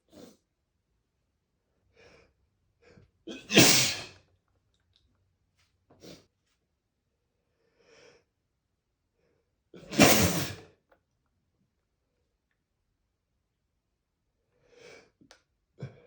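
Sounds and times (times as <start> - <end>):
man sneezing: 3.3 - 4.2, 9.8 - 10.6
quiet in-breath: 7.5 - 8.3.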